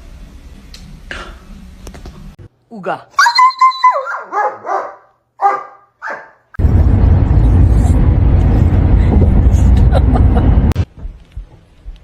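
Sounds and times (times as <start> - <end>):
small dog barking: 3.2 - 6.4
loud steady low noise: 6.6 - 10.9.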